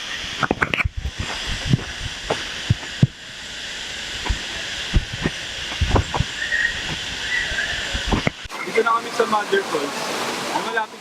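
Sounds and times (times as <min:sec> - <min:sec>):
waterfall rushing: 0:00.0 - 0:11.0
knocks and thumps: 0:00.4 - 0:03.2, 0:04.2 - 0:07.0.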